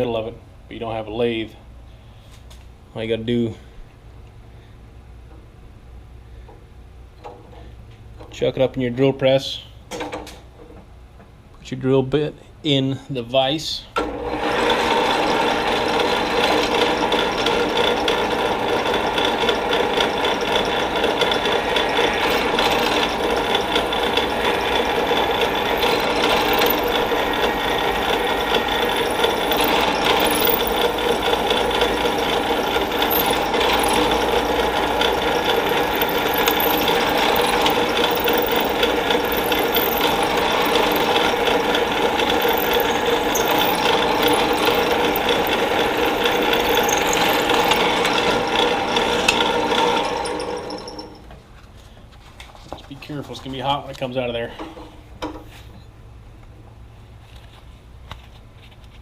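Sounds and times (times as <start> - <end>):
drill press drilling metal rod: 14.0 - 51.2.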